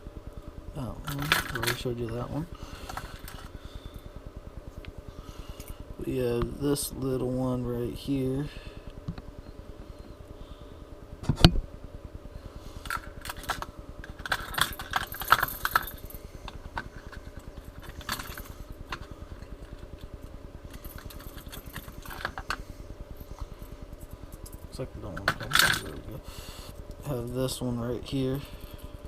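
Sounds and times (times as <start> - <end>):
steady low hum: 0.0 - 29.0
fishing lures clinking in tackle box: 12.9 - 19.8.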